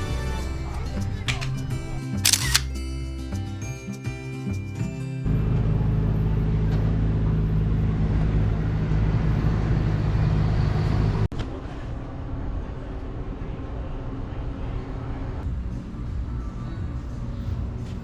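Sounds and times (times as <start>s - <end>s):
low engine hum: 5.2s - 16.0s
road rumble: 5.2s - 18.0s.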